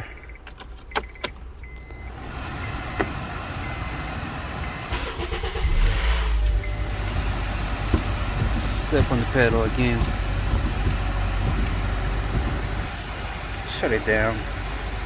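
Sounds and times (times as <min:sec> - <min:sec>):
ignition key clicks: 0:00.0 - 0:03.2, 0:04.9 - 0:12.9
car engine running: 0:00.0 - 0:15.0.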